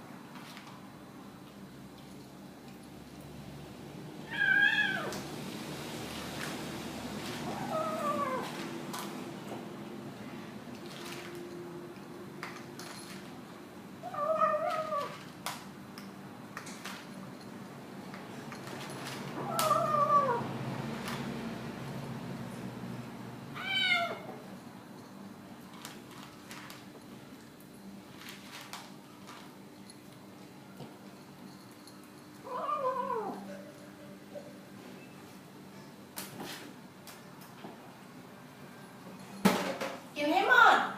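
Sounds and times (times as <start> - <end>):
cat meow-like call: 4.3 - 5.2, 7.5 - 8.5, 19.4 - 20.5, 23.6 - 24.3.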